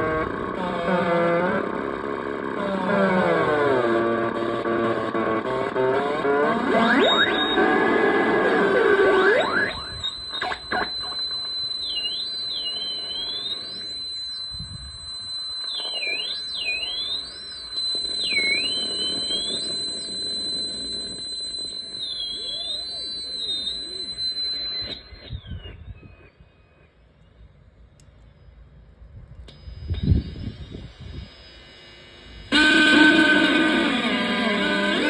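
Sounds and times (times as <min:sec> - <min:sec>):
high electronic whistle: 0:02.6 - 0:27.3, 0:28.3 - 0:35.0
swooping pitch glides: 0:06.1 - 0:26.0.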